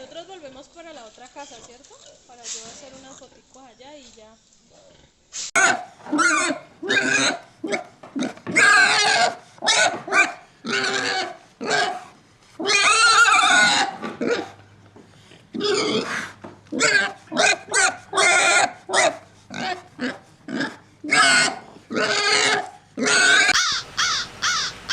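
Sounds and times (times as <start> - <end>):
pigs grunting and squealing: 4.7 - 14.6, 15.3 - 24.9.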